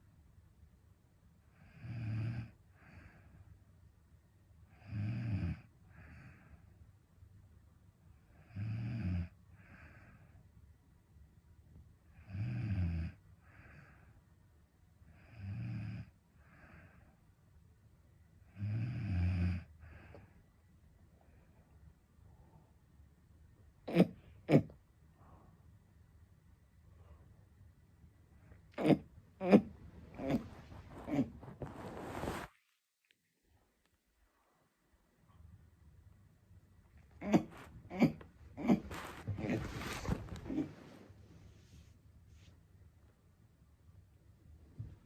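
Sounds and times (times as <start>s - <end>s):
soft breath: 2.7s - 3.6s, 9.5s - 10.5s, 13.4s - 14.3s, 16.3s - 17.4s, 29.7s - 32.5s, 37.4s - 42.6s
woman snoring: 4.8s - 5.7s, 8.5s - 9.3s.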